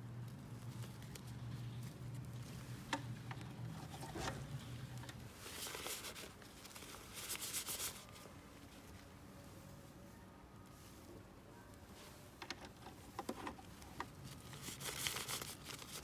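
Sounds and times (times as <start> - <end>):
crinkly packaging rustling: 0.2 - 9.2, 11.7 - 16.0.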